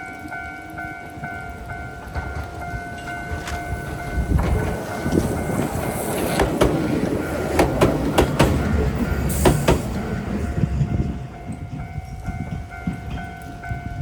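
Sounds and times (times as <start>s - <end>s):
level crossing alarm ringing: 0.0s - 14.0s
train rumbling past: 0.0s - 14.0s
wheel clacks over rail joints: 1.6s - 11.9s.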